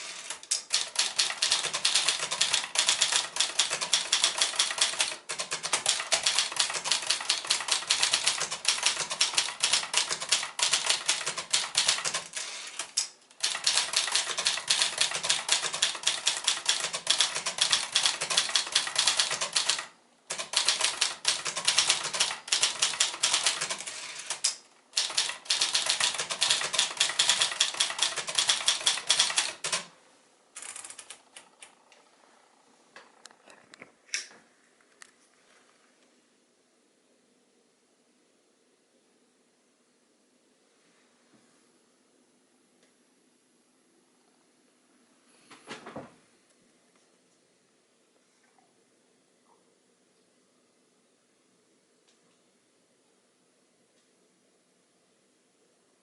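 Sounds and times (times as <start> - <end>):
typewriter typing fast: 0.0 - 29.9, 30.6 - 31.5.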